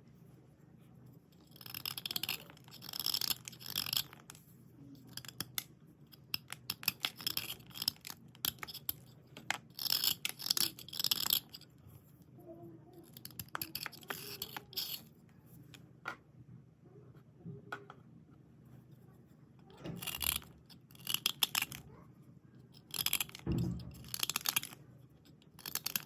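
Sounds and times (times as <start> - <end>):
slate pieces clicking together: 1.5 - 4.3, 5.1 - 11.6, 19.9 - 21.8, 22.7 - 26.0
slate scratching: 13.0 - 15.1, 22.8 - 26.0.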